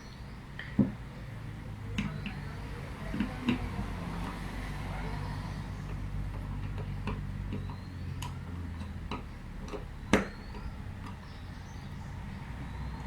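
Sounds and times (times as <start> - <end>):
screwdriver clicks and taps: 5.8 - 11.2.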